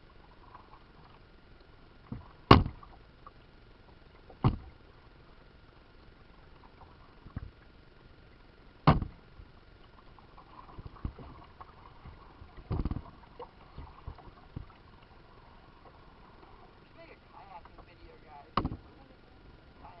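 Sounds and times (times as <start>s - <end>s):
paddle knocking on kayak: 2.1s - 2.9s, 4.3s - 4.7s, 8.9s - 9.2s, 18.5s - 18.9s
water sloshing: 8.9s - 20.0s.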